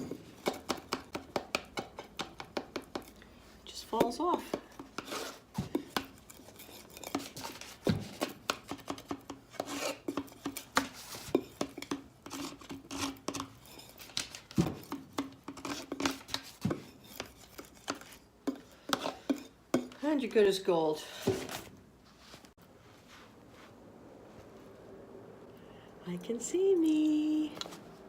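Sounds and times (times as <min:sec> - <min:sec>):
scraper scraping paint off glass: 0:04.9 - 0:11.4.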